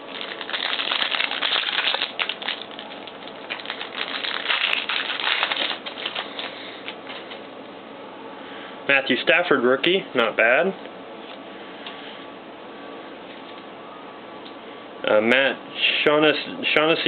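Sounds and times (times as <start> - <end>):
card pack wrapper crinkling: 0.0 - 7.4
cards being handled: 0.1 - 7.4.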